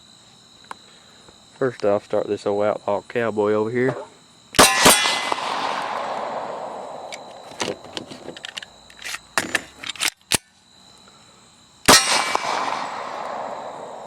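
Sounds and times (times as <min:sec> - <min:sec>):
bullets hitting steel targets: 0:04.6 - 0:07.9, 0:11.9 - 0:14.0
pistol shots: 0:04.6 - 0:07.9, 0:11.9 - 0:14.0.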